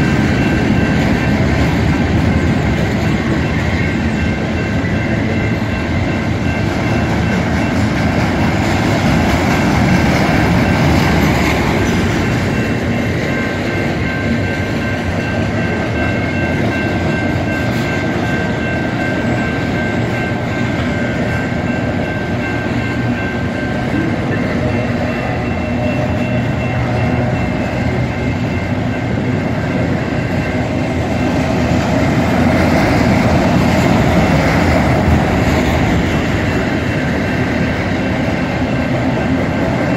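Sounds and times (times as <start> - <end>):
train wheels clattering on rail: 0.0 - 39.9.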